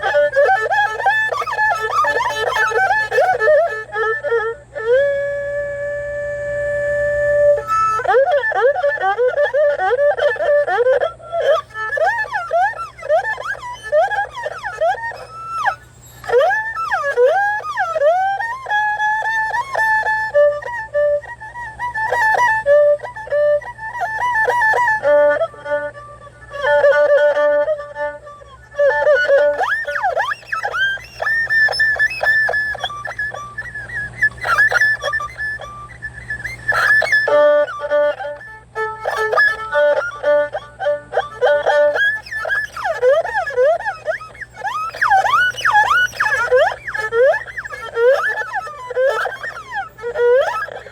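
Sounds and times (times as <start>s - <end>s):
erhu imitating bird calls: 0.0s - 50.9s.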